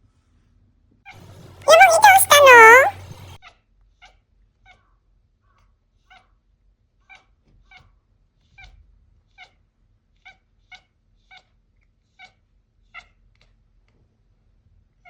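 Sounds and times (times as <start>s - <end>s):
kitten chattering: 1.7s - 3.2s.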